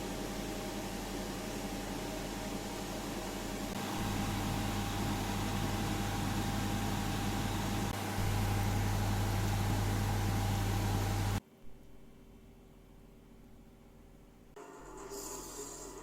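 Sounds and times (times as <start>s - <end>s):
machine hum with hiss: 0.0s - 11.4s.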